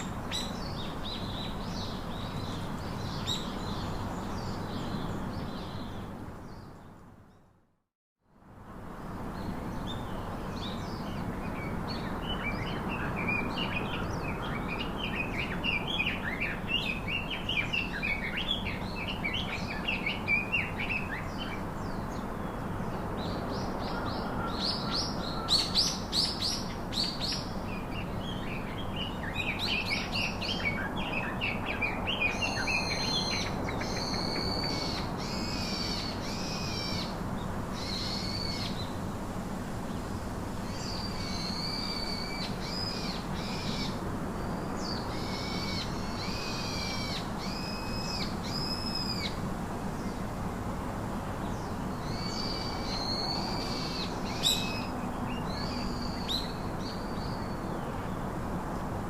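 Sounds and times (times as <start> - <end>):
songbirds singing and calling: 0.0 - 7.5, 9.0 - 39.1, 39.8 - 50.6, 51.2 - 59.0
steady outdoor hiss: 0.0 - 59.0.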